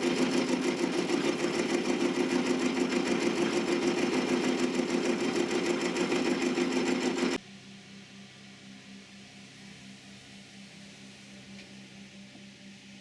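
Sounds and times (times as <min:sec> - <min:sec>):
metalworking lathe whirring: 0:00.0 - 0:07.4.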